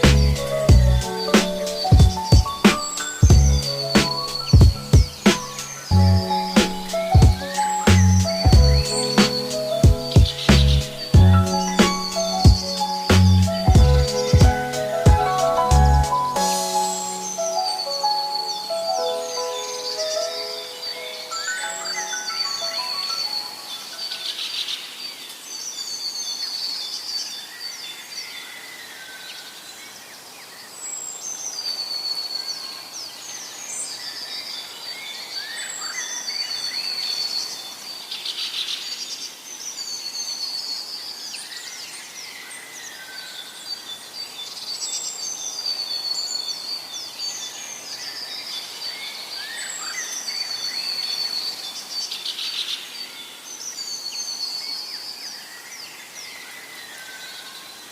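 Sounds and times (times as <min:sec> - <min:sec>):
soft steady hiss: 0:00.0 - 0:57.9
songbirds chirping and trilling: 0:00.0 - 0:57.9.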